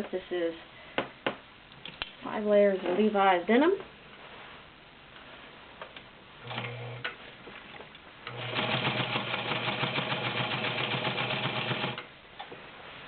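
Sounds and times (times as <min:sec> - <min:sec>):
sewing machine stitching: 0:06.5 - 0:07.1, 0:08.3 - 0:12.1.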